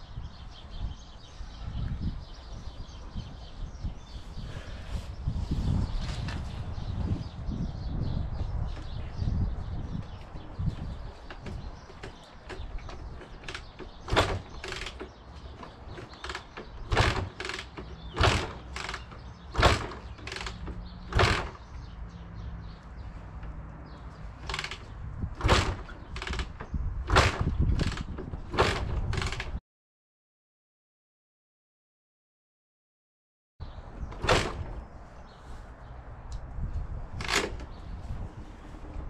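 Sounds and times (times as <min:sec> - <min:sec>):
mechanical clunks and clacks: 0:11.2 - 0:21.9, 0:24.4 - 0:29.6, 0:34.1 - 0:34.8, 0:37.2 - 0:37.7.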